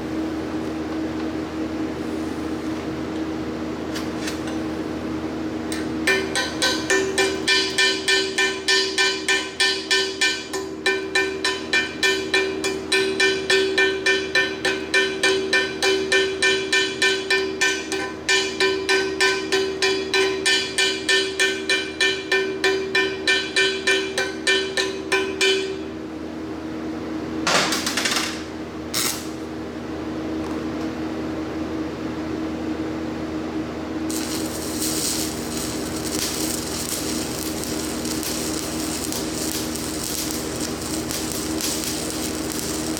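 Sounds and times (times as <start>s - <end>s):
steady hiss: 34.1s - 42.9s.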